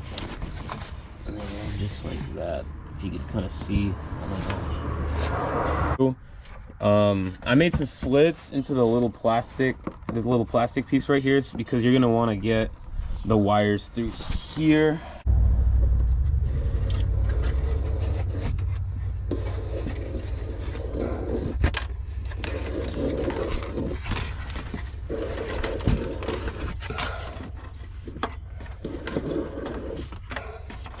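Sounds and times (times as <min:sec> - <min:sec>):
scraping and rustling plastic: 0:00.0 - 0:02.4, 0:16.9 - 0:31.0
steady low rumble: 0:12.6 - 0:28.8.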